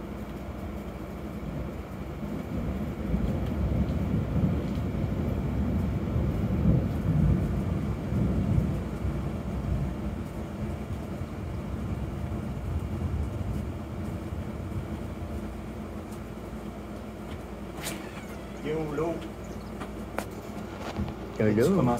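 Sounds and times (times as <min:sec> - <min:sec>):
rolling thunder: 0:01.6 - 0:16.0.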